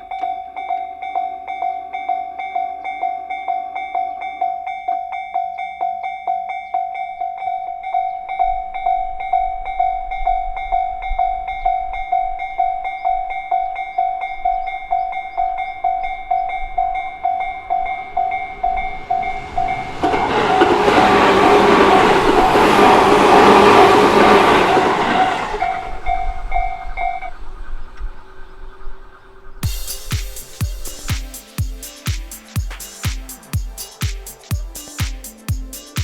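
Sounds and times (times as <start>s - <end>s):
level-crossing warning bell: 0.0s - 27.4s
train rumbling and rushing past: 14.7s - 31.1s.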